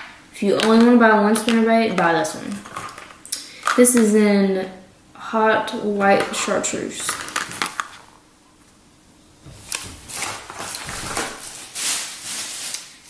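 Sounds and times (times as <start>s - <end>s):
packaging rustling and crinkling: 7.0s - 8.2s, 9.4s - 13.0s.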